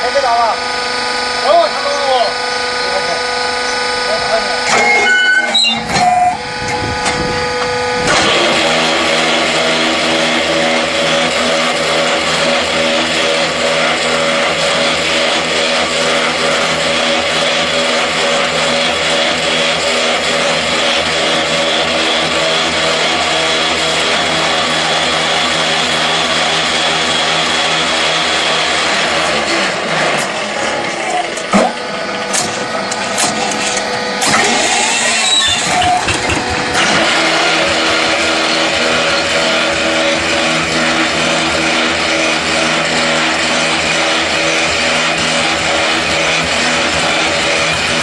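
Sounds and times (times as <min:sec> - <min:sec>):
machine humming: 0:00.0 - 0:48.0
machine rattling: 0:32.3 - 0:48.0.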